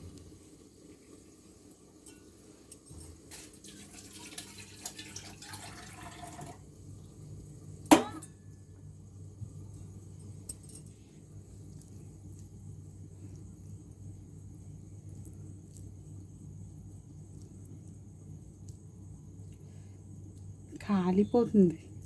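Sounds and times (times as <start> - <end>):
faint steady hum: 0.0 - 22.0
sharp ringing clink: 7.9 - 8.4.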